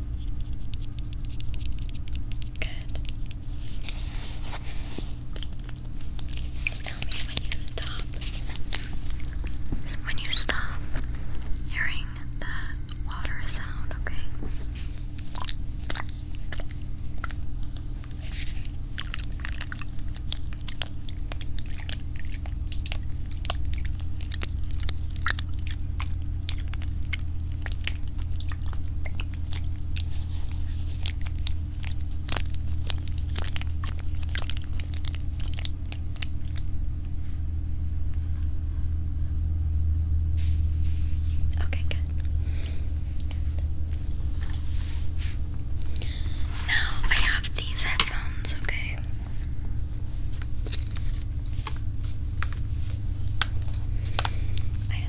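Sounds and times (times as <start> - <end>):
crackly clicks and taps: 0.0 - 4.0
steady low hum: 0.0 - 55.0.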